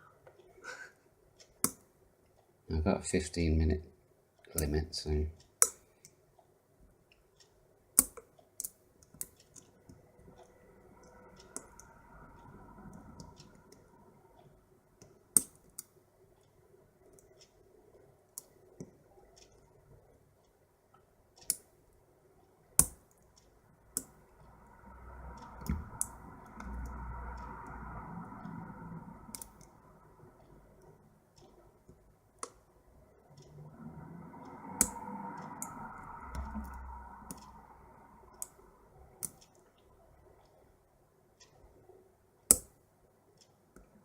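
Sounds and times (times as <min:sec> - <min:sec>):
soft swelling noise: 0:10.0 - 0:14.9, 0:23.6 - 0:31.8, 0:32.9 - 0:40.4.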